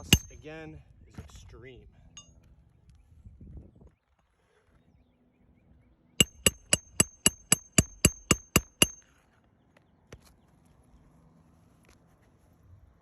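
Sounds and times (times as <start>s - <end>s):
hammer striking nail: 0.0s - 0.4s, 6.2s - 9.1s.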